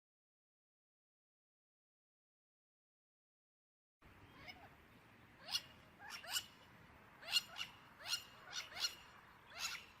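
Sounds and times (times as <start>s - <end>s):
high-pitched animal calls: 5.4s - 6.6s, 7.2s - 10.0s.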